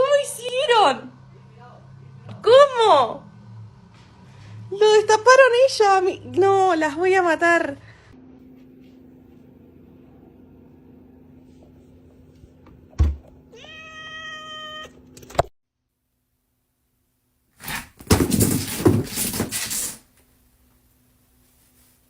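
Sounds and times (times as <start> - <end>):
cat meowing: 13.5 - 15.0
loud scuffling: 17.6 - 20.1.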